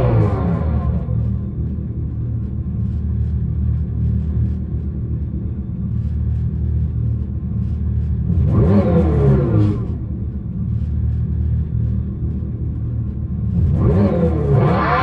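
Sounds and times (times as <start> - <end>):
deep rumbling exhaust sound: 0.0 - 15.0.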